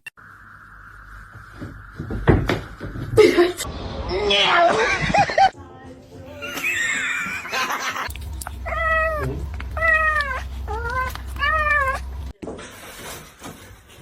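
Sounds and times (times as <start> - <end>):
low steady hum: 7.6 - 12.4
cat meowing: 8.6 - 12.2.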